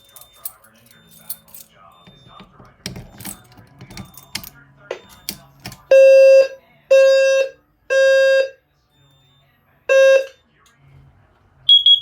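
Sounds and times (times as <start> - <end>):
fire alarm low buzzing: 5.0 - 10.4, 11.7 - 12.0.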